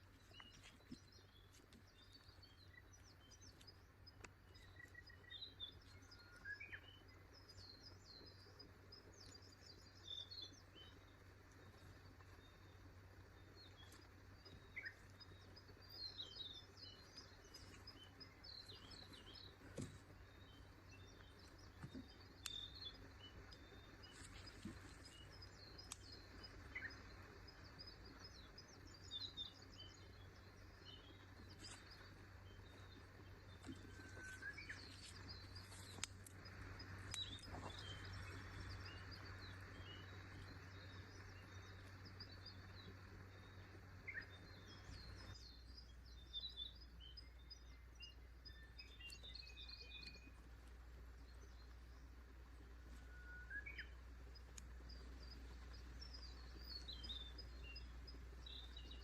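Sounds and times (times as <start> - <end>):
birds chirping: 0.0 - 59.0
steady low hum: 0.0 - 59.0
soft clicks: 25.8 - 26.2.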